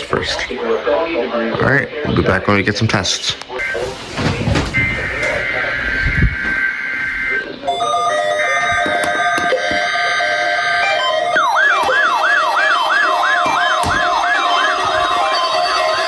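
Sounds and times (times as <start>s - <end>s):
siren-like alarm with falling sweep: 4.5s - 16.0s.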